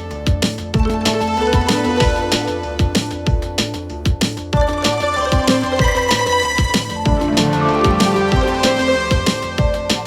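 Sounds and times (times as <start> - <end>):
electronic music with steady beat: 0.0 - 10.0.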